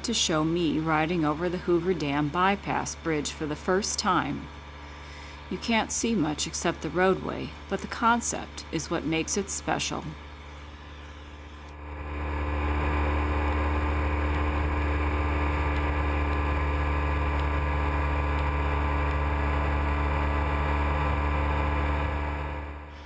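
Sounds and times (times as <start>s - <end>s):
motorcycle engine drone: 11.3s - 23.0s.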